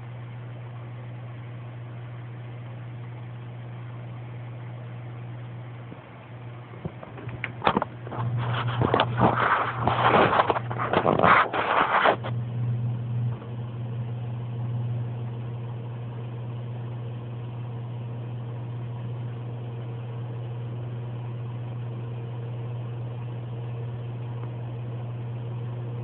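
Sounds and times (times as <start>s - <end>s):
aquarium pump humming: 0.0s - 26.0s
rustling noise: 6.8s - 12.4s.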